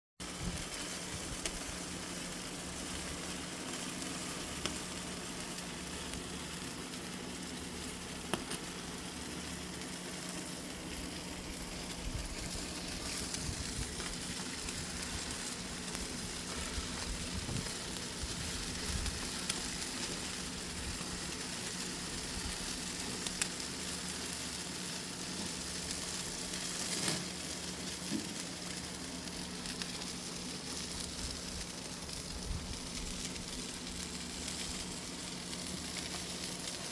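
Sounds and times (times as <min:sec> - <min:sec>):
barbecue sizzling on a grill: 0:00.2 - 0:36.9
fat popping and crackling: 0:00.3 - 0:06.6, 0:08.0 - 0:23.8.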